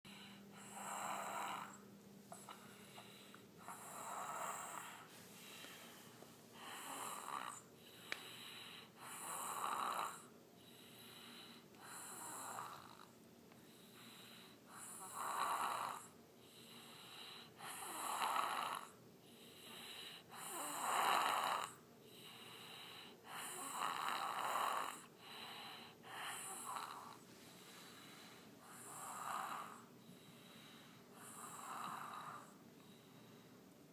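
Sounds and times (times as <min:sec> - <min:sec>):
baby snoring: 0:00.1 - 0:01.8, 0:02.4 - 0:05.1, 0:06.6 - 0:10.3, 0:11.0 - 0:13.1, 0:14.0 - 0:19.0, 0:19.7 - 0:27.2, 0:28.6 - 0:29.9, 0:30.7 - 0:32.6.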